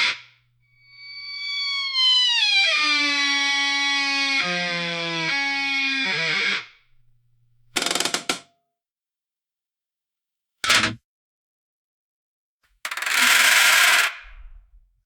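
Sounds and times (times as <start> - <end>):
metal door hinge creaking: 0.8 - 8.4.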